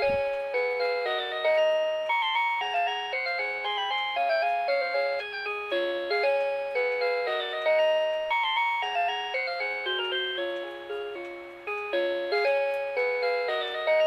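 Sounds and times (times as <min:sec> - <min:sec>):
melody alarm clock playing tune: 0:00.0 - 0:14.0.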